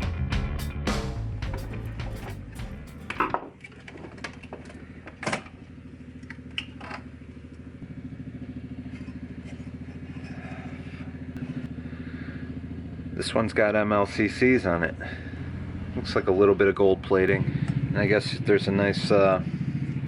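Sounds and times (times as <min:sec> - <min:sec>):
background music: 0:00.0 - 0:03.4.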